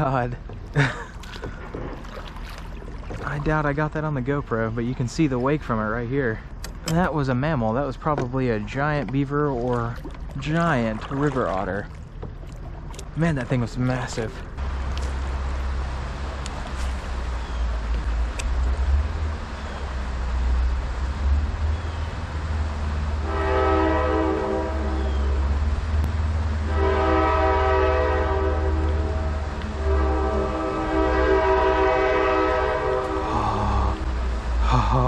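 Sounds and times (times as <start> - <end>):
steady low rumble: 0.0 - 23.4, 24.0 - 35.0
train horn blasts: 23.2 - 25.4, 26.6 - 33.3.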